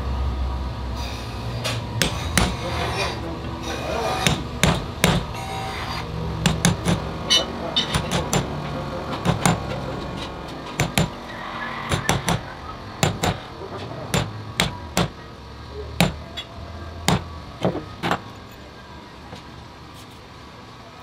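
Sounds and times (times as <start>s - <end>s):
sharp knocks and taps on metal: 1.7s - 2.6s, 4.2s - 5.4s, 6.4s - 11.2s, 11.9s - 15.2s, 16.0s - 16.5s, 17.1s - 18.3s.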